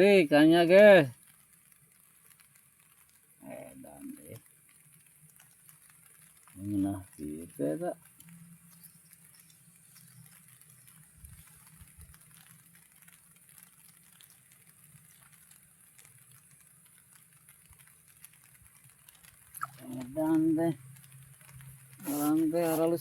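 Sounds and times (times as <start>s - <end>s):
light rain pattering: 0.0s - 23.0s
low hum and hiss: 0.0s - 23.0s
small ticks: 0.0s - 23.0s.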